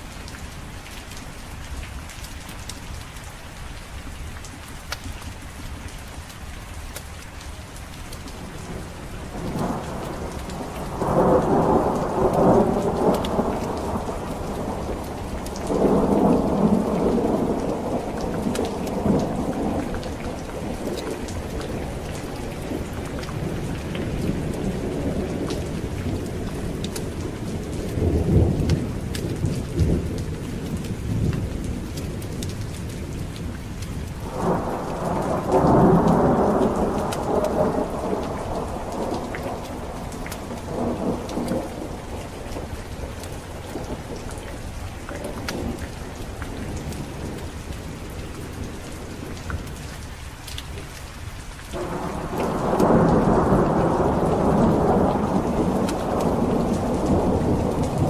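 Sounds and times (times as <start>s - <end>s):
steady rain: 0.0s - 58.0s
rolling thunder: 8.6s - 32.5s, 34.2s - 48.8s, 51.8s - 58.0s
thunder crack: 34.2s - 42.2s, 51.8s - 58.0s.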